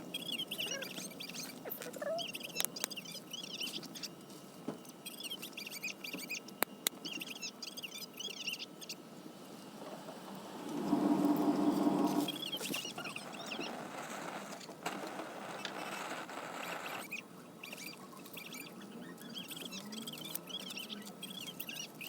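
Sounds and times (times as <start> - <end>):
small bird chirping: 0.0 - 4.2, 4.8 - 9.1, 11.3 - 22.0
wood fire popping: 10.7 - 17.1.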